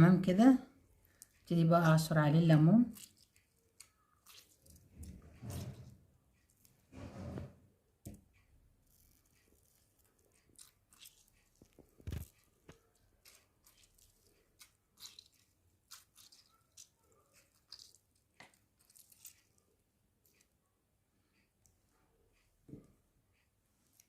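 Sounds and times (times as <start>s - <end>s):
wet squelches: 0.9s - 6.7s, 8.9s - 20.5s.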